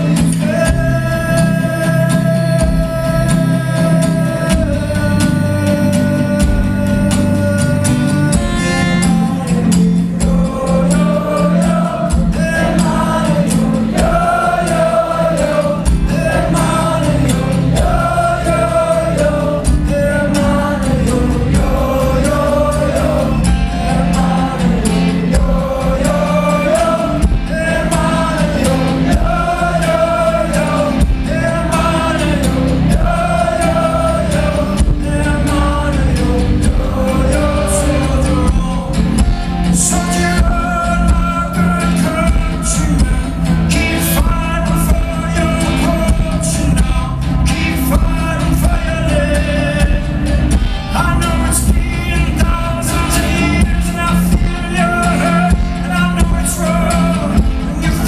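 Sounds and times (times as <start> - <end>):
beat: 0.0 - 58.0
wordless singing: 0.0 - 58.0.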